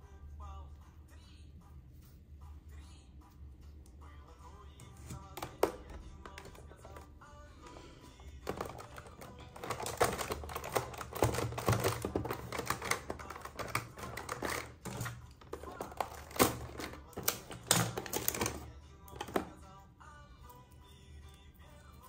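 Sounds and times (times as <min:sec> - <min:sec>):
faint background music: 0:00.0 - 0:22.0
packaging crinkling: 0:08.4 - 0:19.5.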